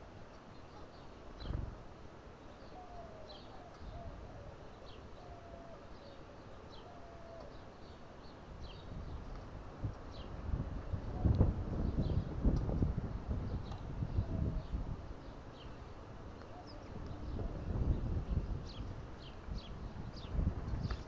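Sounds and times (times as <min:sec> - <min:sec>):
wind thumps on microphone: 0:01.4 - 0:01.9, 0:09.0 - 0:15.0, 0:17.2 - 0:21.0
small birds chirping: 0:02.4 - 0:09.4, 0:13.4 - 0:21.0.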